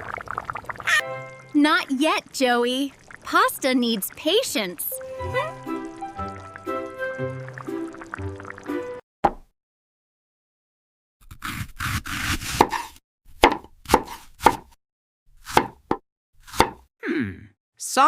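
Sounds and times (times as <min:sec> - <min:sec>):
knife chopping on cutting board: 0:11.3 - 0:14.8, 0:15.4 - 0:16.8.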